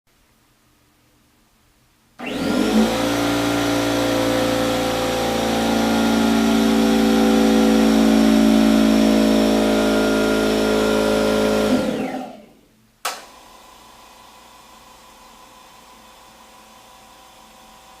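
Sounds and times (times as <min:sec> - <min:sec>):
sharp click: 0:13.0 - 0:13.3.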